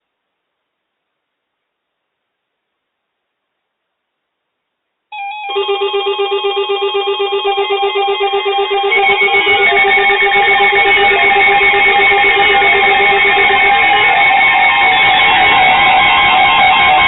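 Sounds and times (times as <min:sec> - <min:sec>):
electronic music with pulsing beat: 0:05.2 - 0:17.0.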